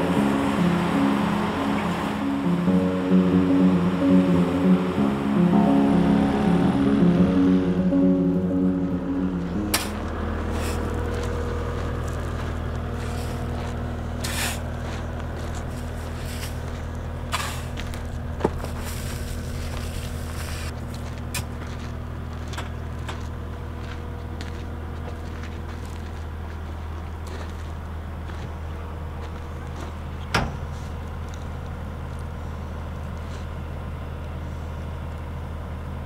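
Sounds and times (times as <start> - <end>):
vehicle engine running: 0.0 - 36.0
sharp knocks and clanks: 30.2 - 30.8.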